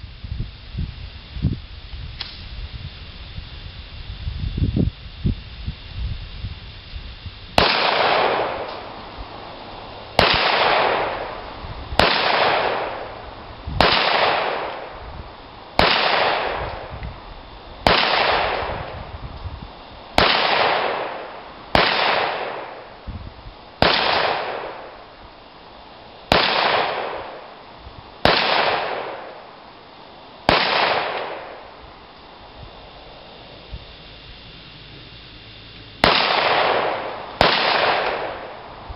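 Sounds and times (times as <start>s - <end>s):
pistol shots with echo: 7.6s - 9.0s, 10.2s - 11.4s, 12.0s - 13.2s, 13.8s - 14.9s, 15.8s - 16.9s, 17.8s - 18.8s, 20.2s - 22.9s, 23.8s - 25.0s, 26.3s - 27.5s, 28.2s - 29.4s, 30.5s - 31.7s, 36.0s - 38.7s.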